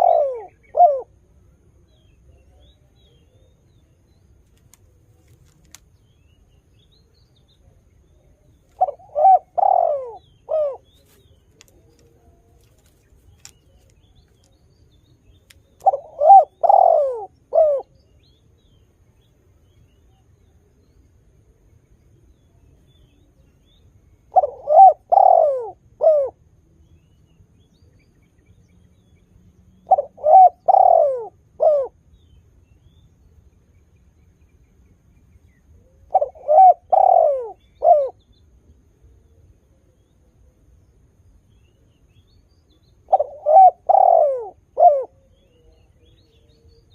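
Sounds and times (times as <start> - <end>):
dove cooing: 0.0 - 1.2, 8.7 - 13.8, 15.8 - 18.0, 24.3 - 26.4, 29.8 - 32.0, 35.8 - 38.2, 43.0 - 46.8.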